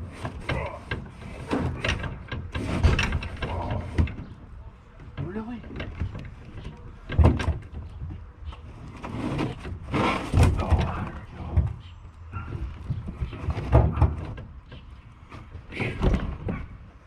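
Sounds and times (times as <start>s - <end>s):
thumps knocks and scrapes: 0.0s - 17.0s.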